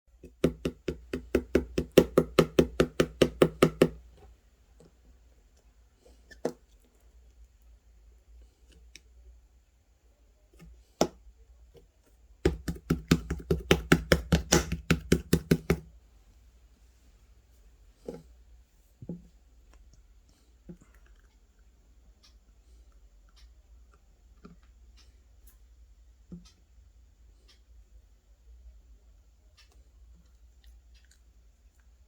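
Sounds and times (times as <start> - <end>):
rapid sharp knocking: 0.4 - 4.0, 12.5 - 15.8.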